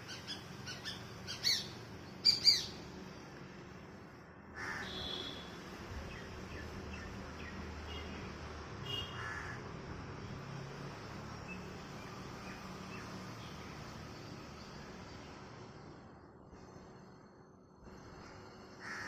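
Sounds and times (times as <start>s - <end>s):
small birds chirping: 0.0s - 2.8s.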